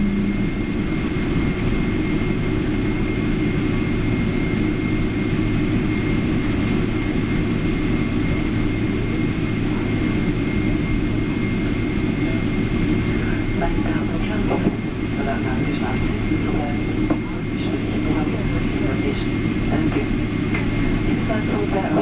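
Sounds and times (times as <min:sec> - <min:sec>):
faint high whine: 0:00.0 - 0:03.1
constant low hum: 0:00.0 - 0:22.0
jet engine cabin rush: 0:00.0 - 0:22.0.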